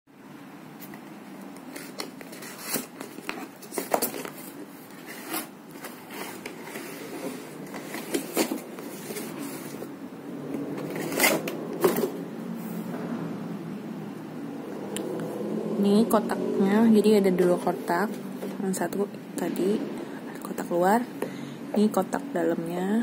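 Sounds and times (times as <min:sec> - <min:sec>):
cardboard boxes being handled: 0:01.6 - 0:10.0.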